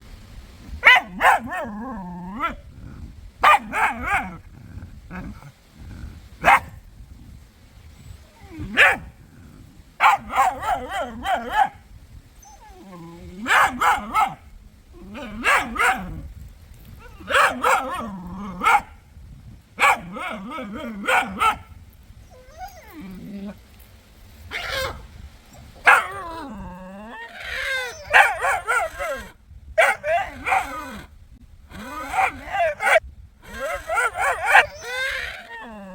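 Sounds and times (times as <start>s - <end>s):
puppy barking and yipping: 0.8s - 2.6s, 3.4s - 4.4s, 6.4s - 6.7s, 8.6s - 9.1s, 10.0s - 11.8s, 13.4s - 14.4s, 15.2s - 16.1s, 17.1s - 18.9s, 19.8s - 21.7s, 25.8s - 26.4s, 27.1s - 31.0s, 31.8s - 35.9s.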